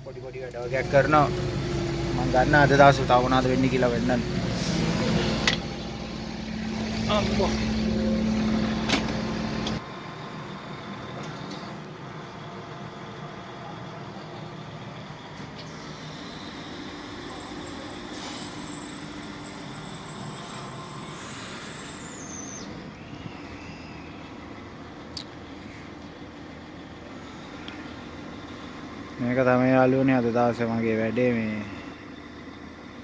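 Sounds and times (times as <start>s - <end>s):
diesel engine running: 0.0s - 33.0s
high whine sliding down: 0.6s - 9.8s, 15.6s - 24.5s.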